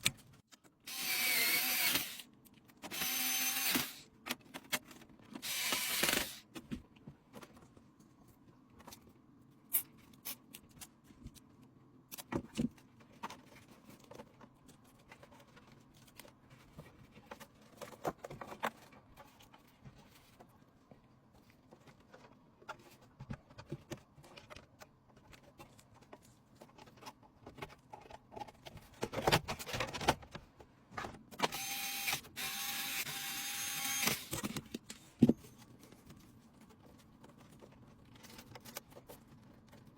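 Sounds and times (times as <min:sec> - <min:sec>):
electric screwdriver whirring: 0:00.9 - 0:02.2, 0:02.9 - 0:04.0, 0:05.4 - 0:06.4, 0:31.4 - 0:34.5.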